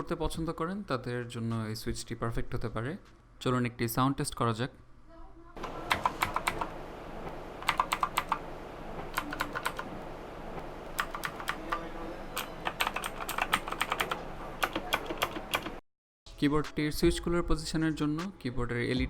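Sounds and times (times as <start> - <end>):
clicky keyboard keystrokes: 5.6 - 6.7, 7.3 - 8.4, 9.0 - 9.9, 10.9 - 15.8.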